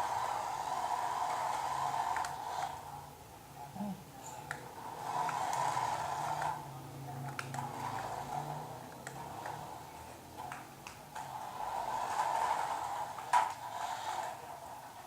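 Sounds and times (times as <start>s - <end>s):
small electric motor and gears: 5.0s - 6.6s, 11.2s - 14.4s.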